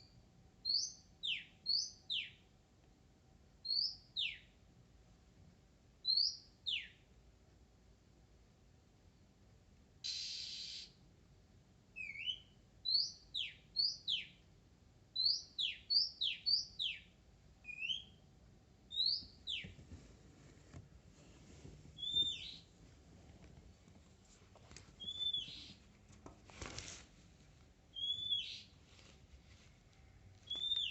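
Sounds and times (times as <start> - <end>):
bird singing whistled notes: 0.0 - 2.4, 3.6 - 4.5, 6.0 - 7.0, 10.0 - 10.9, 12.0 - 14.4, 15.2 - 18.2, 18.9 - 19.7, 22.0 - 22.7, 25.0 - 25.8, 27.9 - 28.7, 30.4 - 30.9.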